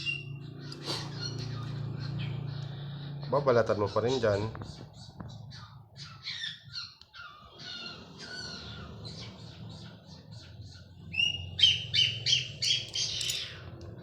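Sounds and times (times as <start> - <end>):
birds chirping and squawking: 0.0 - 14.0.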